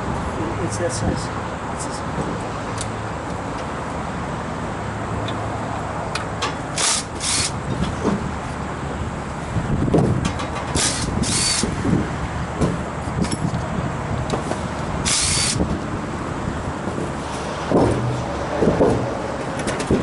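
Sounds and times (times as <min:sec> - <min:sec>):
power drill-driver whirring: 0:06.8 - 0:07.6, 0:10.8 - 0:11.7, 0:15.0 - 0:15.6.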